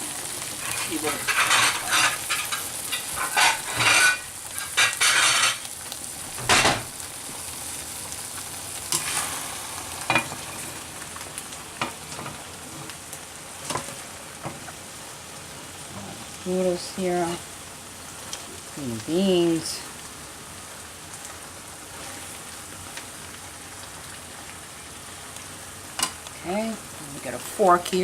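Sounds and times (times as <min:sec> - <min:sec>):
stir fry sizzling in a wok: 0:00.0 - 0:28.0
utensil scraping a wok: 0:00.4 - 0:05.7, 0:08.9 - 0:10.8.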